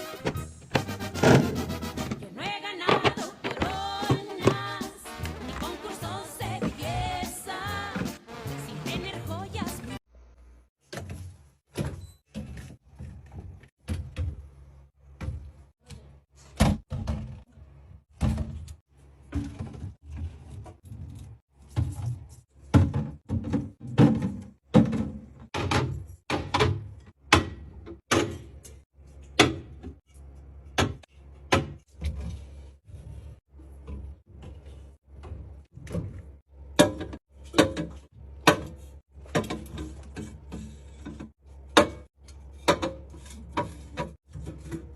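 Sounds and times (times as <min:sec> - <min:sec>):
food containers clunking on shelves: 0:00.2 - 0:04.8, 0:21.7 - 0:30.0, 0:30.7 - 0:32.5, 0:33.7 - 0:44.9.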